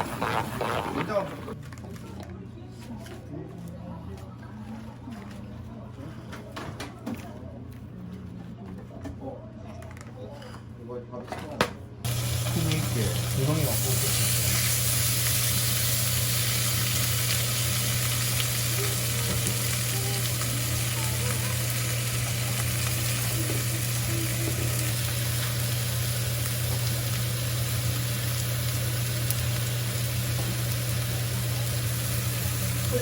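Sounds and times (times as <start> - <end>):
food sizzling in a pan: 12.1 - 33.0.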